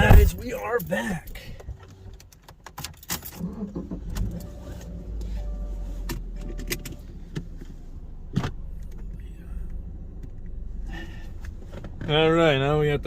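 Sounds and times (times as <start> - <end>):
handling knocks: 0.0 - 0.5
car engine rumble from inside: 0.0 - 2.2, 3.4 - 13.0.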